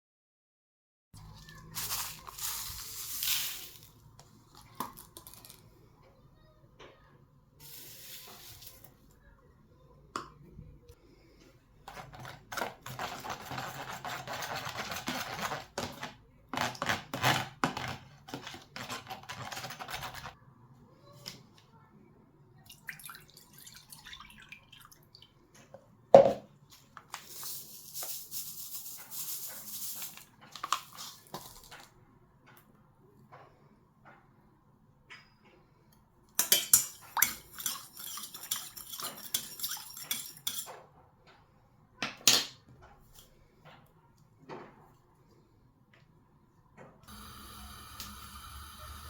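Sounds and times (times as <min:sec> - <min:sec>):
dishes and utensils clinking: 0:36.4 - 0:40.9.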